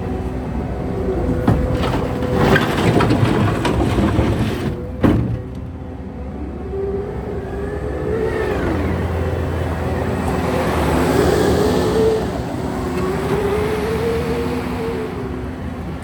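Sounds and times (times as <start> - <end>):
diesel engine revving under load: 0.0 - 16.0
thump: 5.0 - 5.7.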